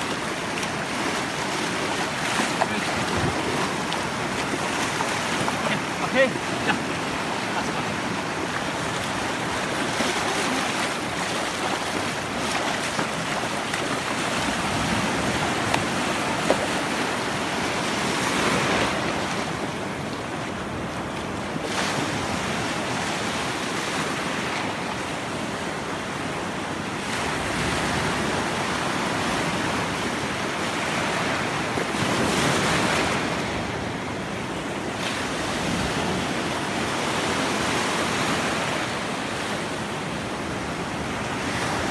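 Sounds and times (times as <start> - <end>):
wind on microphone: 0.0 - 24.8
sea surf waves breaking: 0.0 - 26.4, 27.0 - 41.9.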